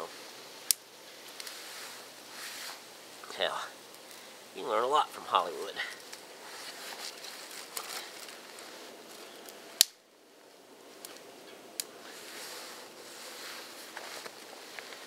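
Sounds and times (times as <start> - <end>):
campfire crackling and hissing: 0.0 - 15.0
sharp pops from fire: 0.6 - 2.9, 3.8 - 4.2, 5.9 - 6.4, 7.0 - 10.1, 11.0 - 12.2.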